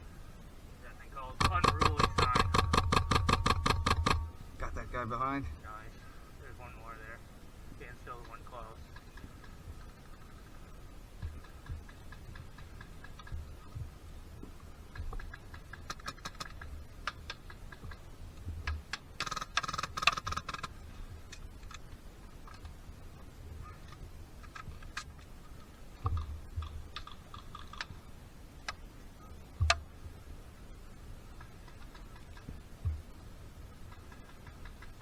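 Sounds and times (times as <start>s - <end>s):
airsoft gunfire clicks: 1.4s - 4.4s.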